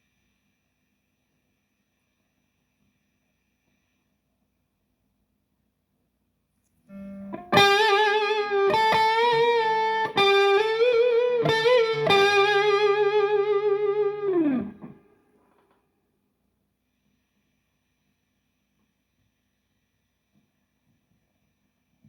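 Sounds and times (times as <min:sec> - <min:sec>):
electric guitar picked notes: 0:06.9 - 0:15.0.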